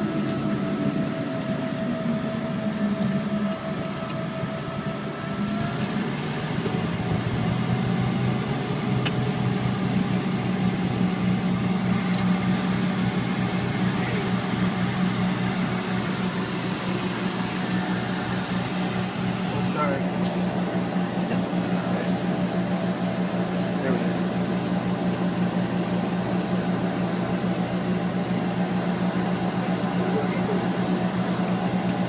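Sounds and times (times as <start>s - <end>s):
aircraft engines droning: 0.0s - 32.0s.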